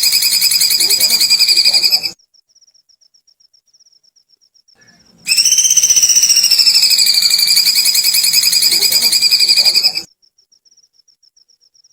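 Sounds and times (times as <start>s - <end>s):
bird rapid high trilling call: 0.0s - 2.2s, 5.3s - 10.1s.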